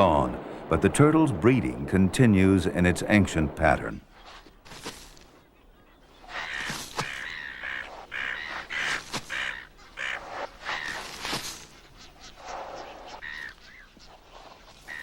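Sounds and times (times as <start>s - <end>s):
birds making harsh calls: 4.1s - 15.0s.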